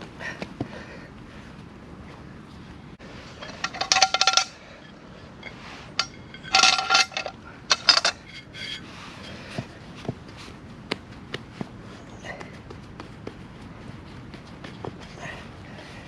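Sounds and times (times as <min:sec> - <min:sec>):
metal cookware clinking: 0:03.4 - 0:04.6.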